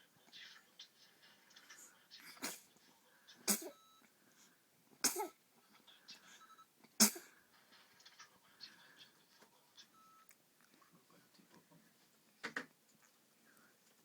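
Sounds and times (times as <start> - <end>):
baby sneezing: 2.2 - 2.7, 3.5 - 3.8, 5.0 - 5.4, 7.0 - 7.3.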